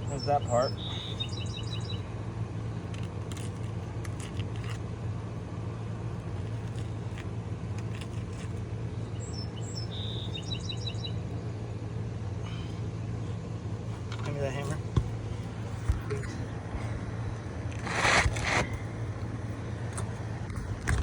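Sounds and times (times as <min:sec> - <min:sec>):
songbird singing trilled phrase: 0:00.0 - 0:02.0, 0:09.0 - 0:11.2
low mechanical hum: 0:00.0 - 0:21.0
shingle taps and scrapes: 0:02.9 - 0:04.9, 0:06.2 - 0:08.6, 0:17.7 - 0:18.8.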